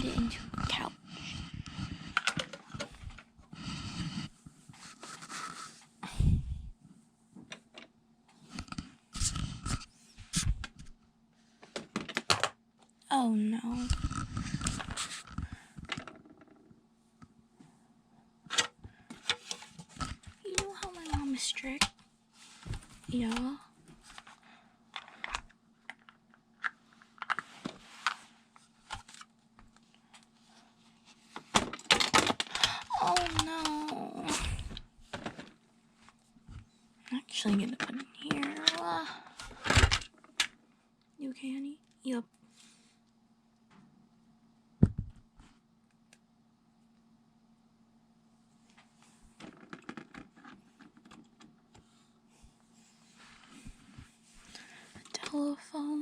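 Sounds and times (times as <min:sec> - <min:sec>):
faint steady hum: 0:00.0 - 0:56.0
plastic toys clicking and knocking: 0:11.7 - 0:12.6, 0:31.5 - 0:34.0, 0:37.5 - 0:40.6, 0:49.4 - 0:51.5.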